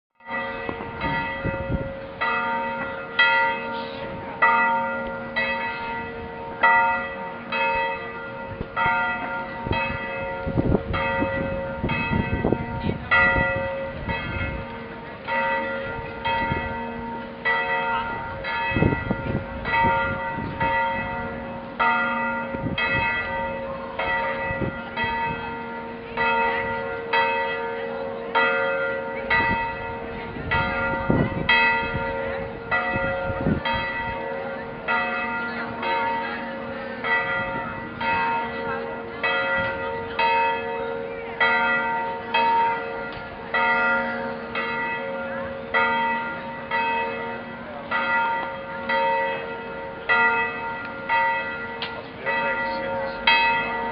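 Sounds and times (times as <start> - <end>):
church bells ringing: 0.2 - 53.9.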